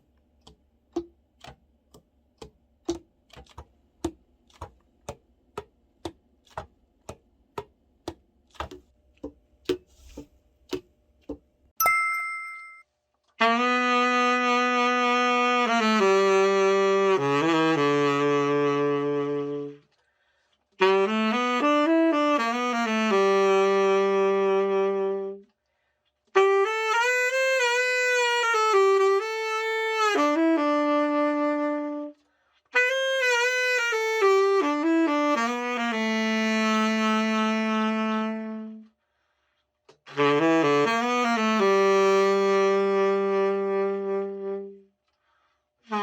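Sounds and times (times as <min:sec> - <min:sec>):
tenor saxophone held notes: 0:13.4 - 0:20.0, 0:20.8 - 0:25.5, 0:26.4 - 0:39.0, 0:40.0 - 0:44.9.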